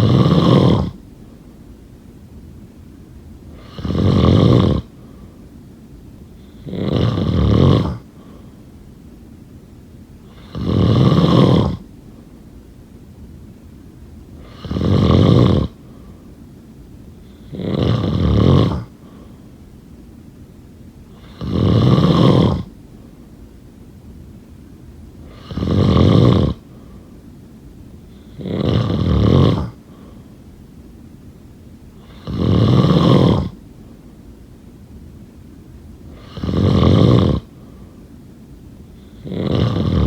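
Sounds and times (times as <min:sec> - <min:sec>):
person snoring: 0:00.0 - 0:01.0, 0:03.5 - 0:05.3, 0:06.4 - 0:08.4, 0:10.3 - 0:11.8, 0:14.4 - 0:16.2, 0:17.3 - 0:19.3, 0:21.1 - 0:22.7, 0:25.2 - 0:27.0, 0:28.1 - 0:30.2, 0:32.0 - 0:33.6, 0:36.1 - 0:37.7, 0:39.0 - 0:40.0.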